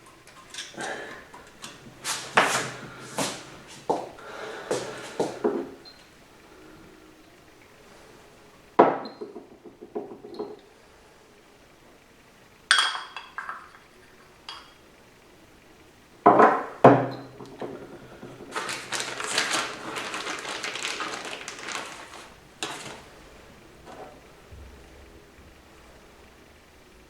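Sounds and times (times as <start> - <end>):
metal parts clinking and knocking: 0.0 - 1.8, 12.7 - 14.8.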